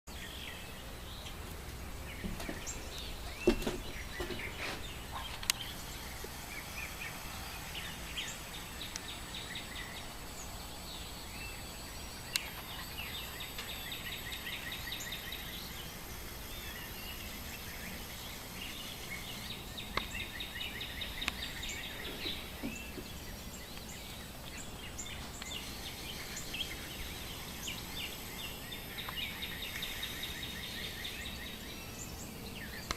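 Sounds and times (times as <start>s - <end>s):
birds chirping and trilling: 0.1s - 32.9s
outdoor hiss: 0.1s - 32.9s
sharp ticks: 8.2s - 10.1s, 11.8s - 22.4s, 25.3s - 30.9s.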